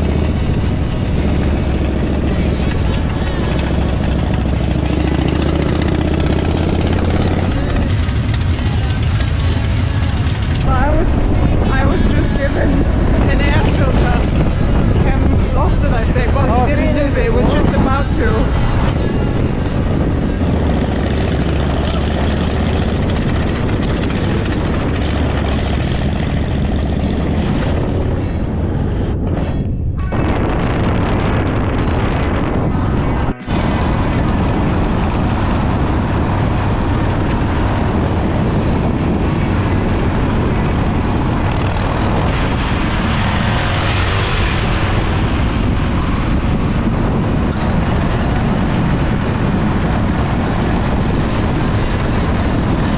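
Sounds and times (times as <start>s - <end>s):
motorcycle engine running: 0.0s - 29.4s, 30.0s - 52.9s
wind rushing: 0.0s - 52.9s.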